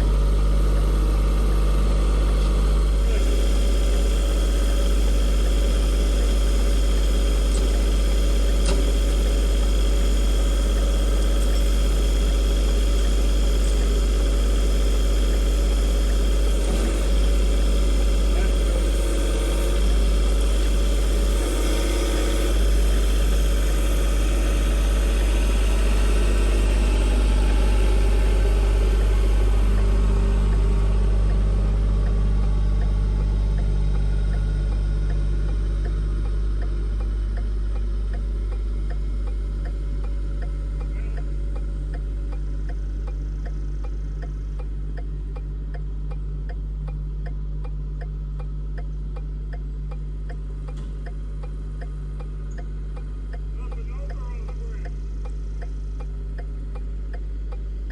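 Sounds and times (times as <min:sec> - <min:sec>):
vehicle engine idling: 0:00.0 - 0:57.9
regular clicking: 0:32.8 - 0:57.9.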